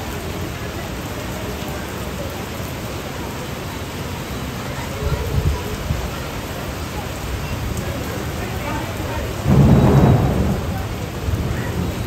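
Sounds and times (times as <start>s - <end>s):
heavy rain pouring: 0.0s - 12.0s.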